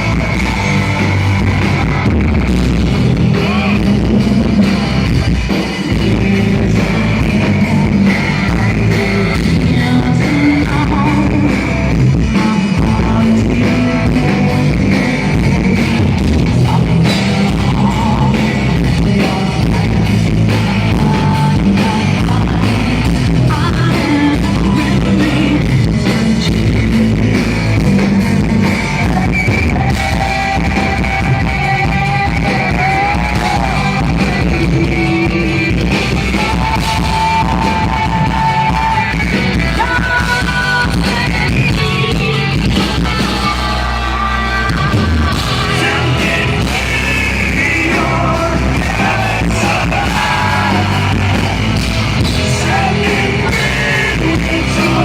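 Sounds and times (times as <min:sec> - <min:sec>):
bass guitar: 0:00.0 - 0:55.0
drums: 0:00.0 - 0:55.0
electric guitars: 0:00.0 - 0:55.0
person singing long notes: 0:43.0 - 0:55.0.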